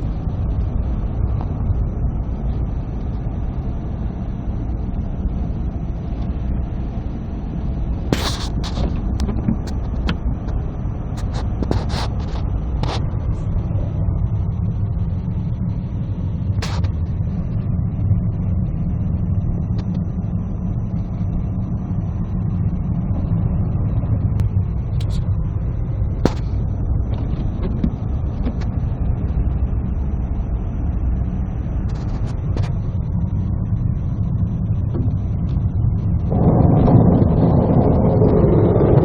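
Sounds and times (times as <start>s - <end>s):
engine and tyre rumble: 0.0s - 39.0s
sharp clicks and knocks: 8.1s - 10.6s, 26.2s - 28.8s.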